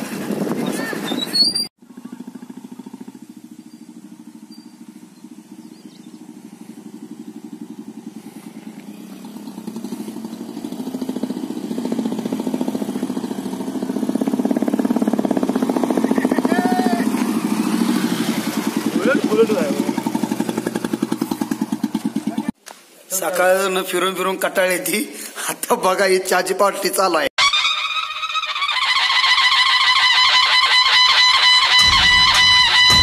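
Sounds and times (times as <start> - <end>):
engine running with fast pulse: 1.8 - 22.6.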